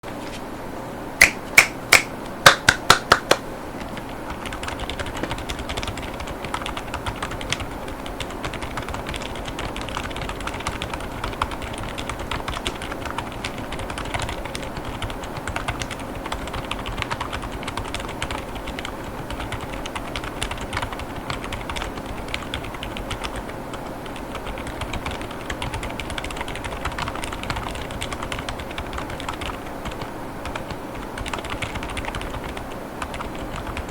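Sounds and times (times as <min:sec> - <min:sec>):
loud sharp clicks: 0:01.2 - 0:03.4
fast typing on mechanical keyboard: 0:02.8 - 0:33.9.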